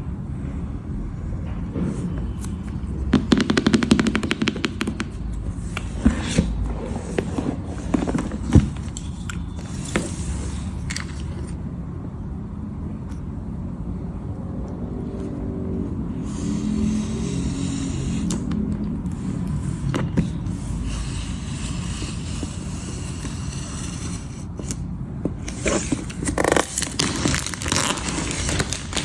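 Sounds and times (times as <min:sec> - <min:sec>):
taps and scrapes of handling: 0:01.4 - 0:11.6, 0:18.3 - 0:29.0
packaging crackling: 0:25.6 - 0:29.0.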